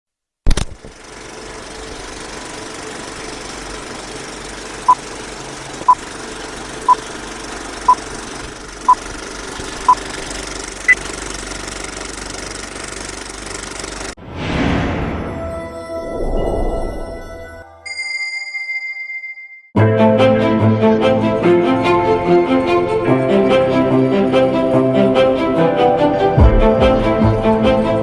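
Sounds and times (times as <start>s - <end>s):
helicopter engine running: 0.9s - 14.2s, 20.1s - 28.0s.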